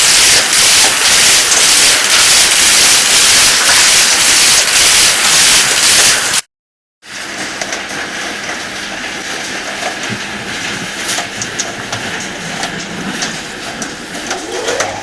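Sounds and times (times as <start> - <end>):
rotary dryer rushing hiss: 0.0 - 6.4.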